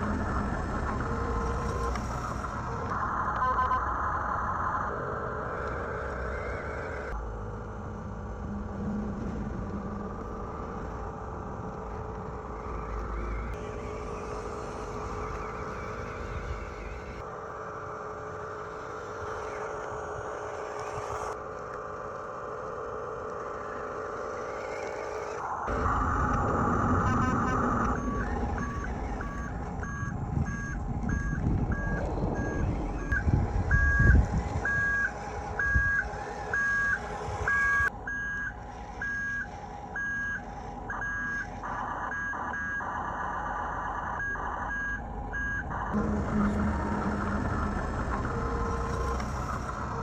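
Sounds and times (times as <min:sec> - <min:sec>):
two-tone reversing beep: 0:02.9 - 0:04.6, 0:25.7 - 0:49.8
toy truck motor whirring: 0:12.4 - 0:25.4, 0:27.3 - 0:41.6, 0:45.4 - 0:50.0.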